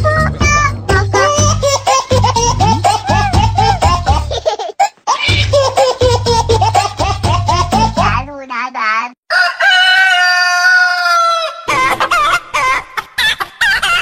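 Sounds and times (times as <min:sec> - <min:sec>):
music track: 0:00.0 - 0:04.4, 0:05.3 - 0:08.3
rooster crowing: 0:09.3 - 0:11.7.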